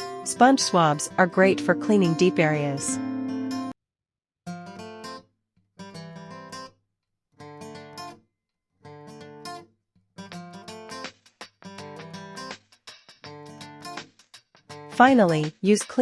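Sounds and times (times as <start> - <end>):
acoustic guitar strumming: 0.0 - 3.7.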